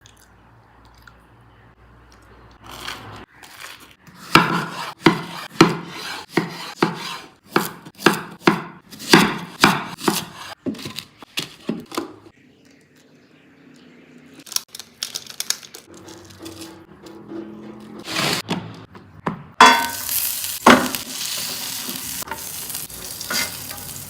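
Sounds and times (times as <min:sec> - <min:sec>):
knife chopping on cutting board: 0:04.2 - 0:11.0.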